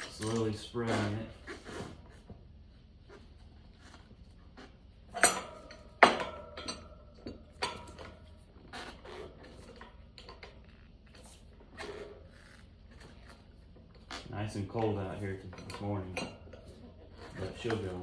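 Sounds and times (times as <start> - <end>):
metal tools clinking on rim: 0.0 - 1.4, 5.1 - 8.2, 14.0 - 18.0.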